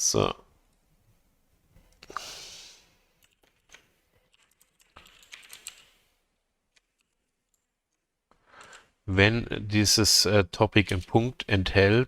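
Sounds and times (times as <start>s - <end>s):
computer keyboard typing: 3.2s - 8.9s.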